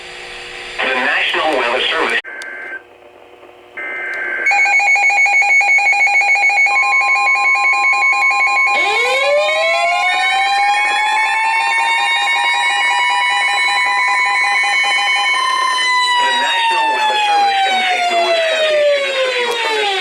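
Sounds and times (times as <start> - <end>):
electronic alarm beeping rapidly: 3.8 - 9.9
siren winding up: 3.8 - 20.0.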